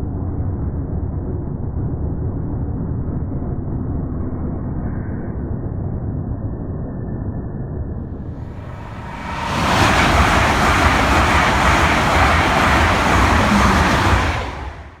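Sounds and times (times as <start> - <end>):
train passing at speed: 8.1 - 15.0.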